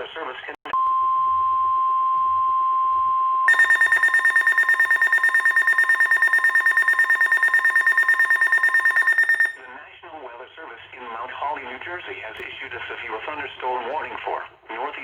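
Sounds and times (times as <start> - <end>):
rapidly pulsing alarm beep: 3.5 - 9.6
steady warning alarm tone: 3.5 - 9.6.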